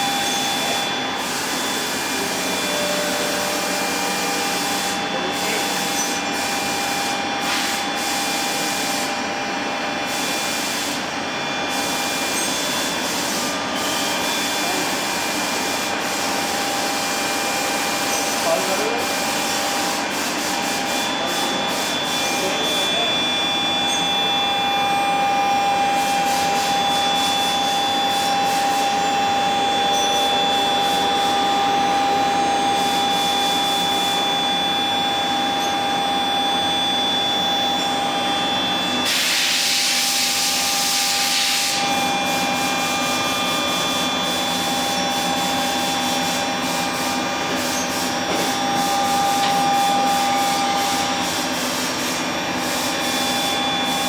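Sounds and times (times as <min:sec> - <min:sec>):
high spindle whine: 0:00.0 - 0:54.0
loud hiss: 0:39.0 - 0:41.8.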